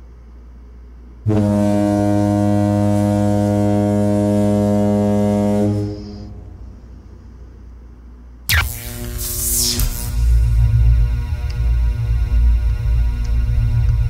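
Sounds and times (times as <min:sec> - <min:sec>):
foghorn blast: 0:01.3 - 0:06.8.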